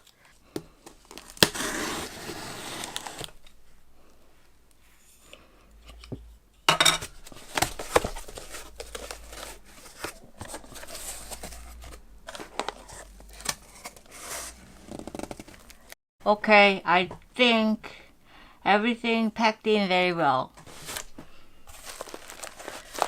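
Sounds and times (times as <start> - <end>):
cardboard crinkling and tearing: 0.9 - 3.4, 7.2 - 15.9, 20.6 - 23.0.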